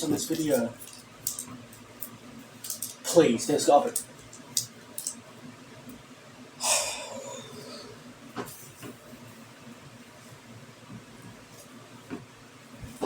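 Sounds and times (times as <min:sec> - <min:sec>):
breathy sigh: 0:06.6 - 0:08.0.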